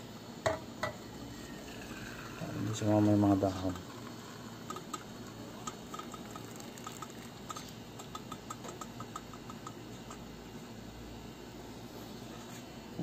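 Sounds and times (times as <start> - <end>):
tea dripping into a cup: 1.6 - 9.7.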